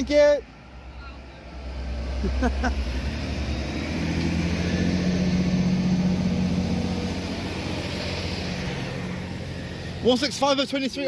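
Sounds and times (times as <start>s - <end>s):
train diesel engine drone: 0.0s - 11.0s.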